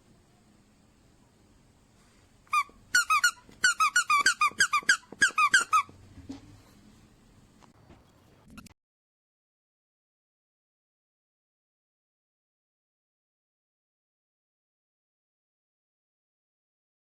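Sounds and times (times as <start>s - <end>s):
squeaky dog toy squeaking: 2.5s - 5.9s.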